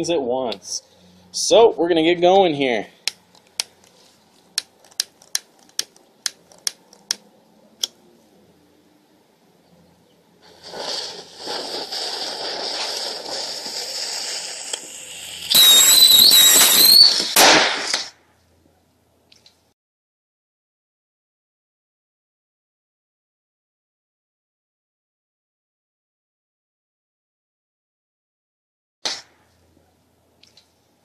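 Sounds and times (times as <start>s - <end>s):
sharp clicks: 4.6s - 7.2s
whistling crackling rush: 10.4s - 18.0s
bottle rockets hissing: 10.4s - 18.1s.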